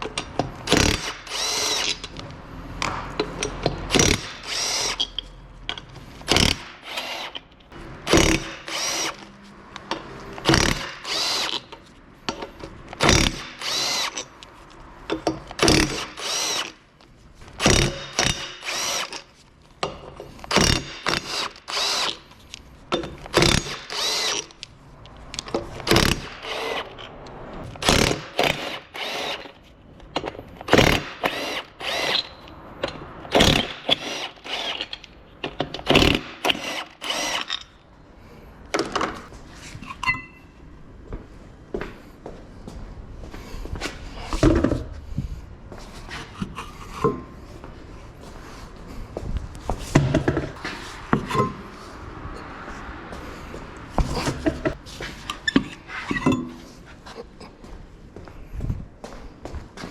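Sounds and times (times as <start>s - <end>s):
power wrench whining bursts: 0.6s - 2.1s, 3.9s - 5.2s, 6.3s - 7.4s, 8.0s - 9.3s, 10.4s - 11.7s, 13.0s - 14.3s, 15.6s - 16.8s, 17.6s - 19.3s, 20.5s - 22.2s, 23.3s - 24.6s, 25.8s - 27.1s, 27.8s - 29.6s, 30.7s - 32.5s, 33.3s - 35.0s, 35.8s - 37.7s.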